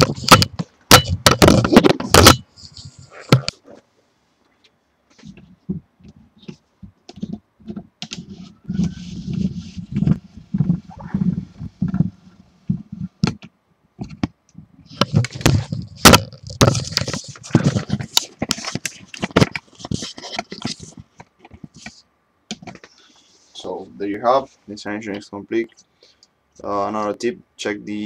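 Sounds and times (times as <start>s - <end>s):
clicks and scrapes of small parts: 0.0s - 3.9s, 14.9s - 23.2s.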